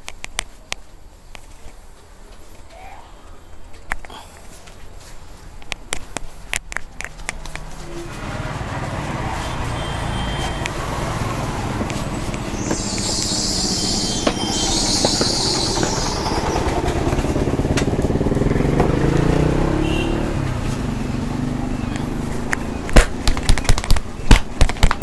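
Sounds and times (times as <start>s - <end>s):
motorcycle-like engine: 7.5s - 25.0s
long hissing sounds: 12.0s - 16.9s.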